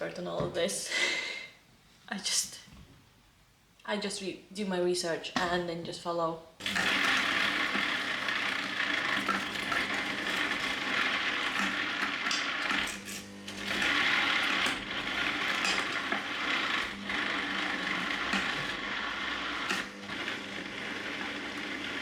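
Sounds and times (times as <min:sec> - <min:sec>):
electric mixer running: 0:06.6 - 0:22.0
vegetable pieces clattering in bowl: 0:06.7 - 0:19.9.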